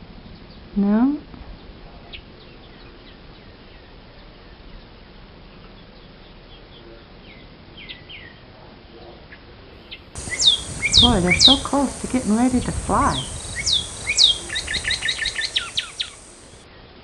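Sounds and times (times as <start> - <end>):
outdoor background hiss: 0.0 - 17.0
birds chirping faintly: 10.0 - 16.6.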